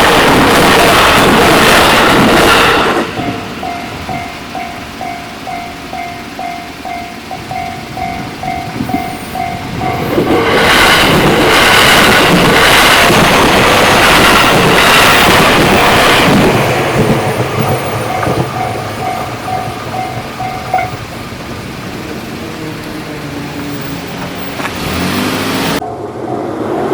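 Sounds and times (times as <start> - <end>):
railroad crossing bell ringing: 0.0 - 24.7, 25.5 - 26.8
electric train passing: 0.0 - 26.9.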